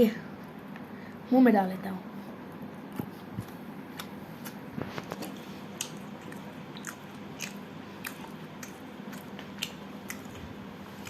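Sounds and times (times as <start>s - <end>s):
person chewing food: 2.9s - 11.0s.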